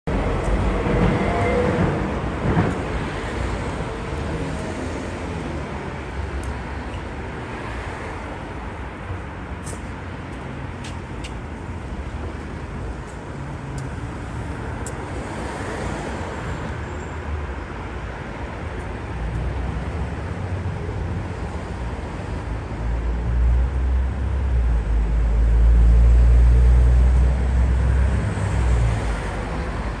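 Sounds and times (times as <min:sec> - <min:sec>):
passing road traffic: 0:00.1 - 0:30.0.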